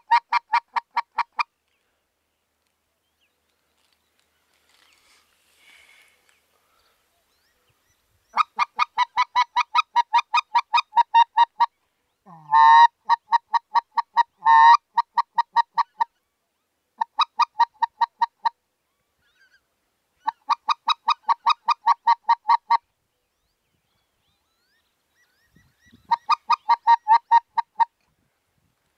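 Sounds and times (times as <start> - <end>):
goose call honks and clucks: 0.0 - 1.5, 8.3 - 11.7, 12.3 - 16.2, 20.2 - 22.9, 26.0 - 28.0.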